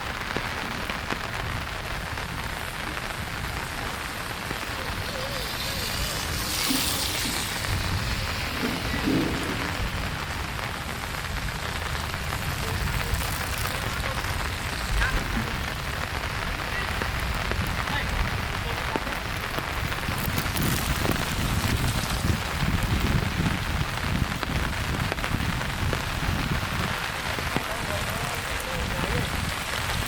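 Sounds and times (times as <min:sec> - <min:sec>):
steady rain on a street: 0:00.0 - 0:30.0
low rumble: 0:03.2 - 0:18.6.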